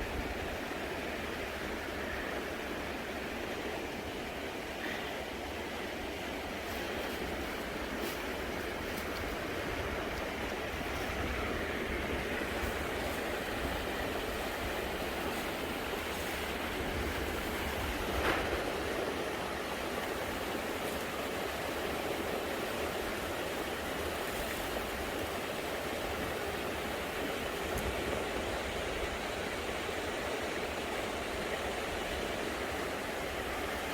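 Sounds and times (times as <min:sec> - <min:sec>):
creek water over rocks: 0:00.0 - 0:33.9
low wind rumble: 0:05.7 - 0:19.7.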